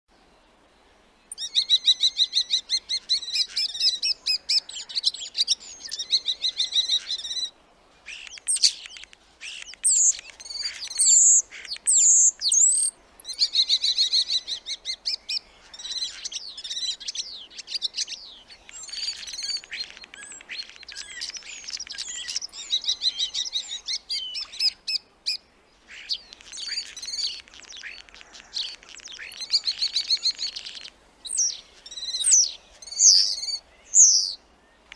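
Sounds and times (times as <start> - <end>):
starling singing: 26.1 - 34.4.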